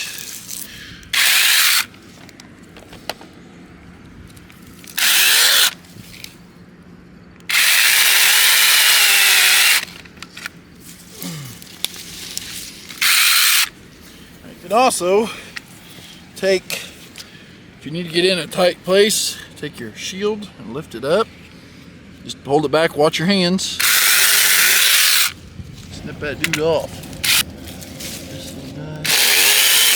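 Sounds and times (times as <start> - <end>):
mini chainsaw cutting: 0.0 - 1.9, 4.9 - 5.8, 7.4 - 10.0, 12.9 - 13.8, 23.8 - 25.4, 27.0 - 27.5, 29.0 - 29.9.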